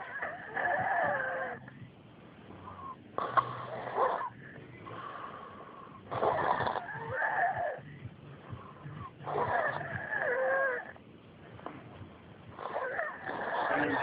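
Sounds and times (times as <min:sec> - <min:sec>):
person snoring with wheeze: 0:00.0 - 0:01.7, 0:02.6 - 0:11.0, 0:12.5 - 0:14.0.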